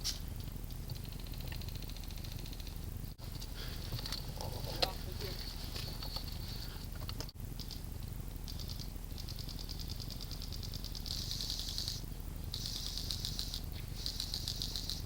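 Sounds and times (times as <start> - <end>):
airsoft guns firing bursts: 8.5 - 15.0.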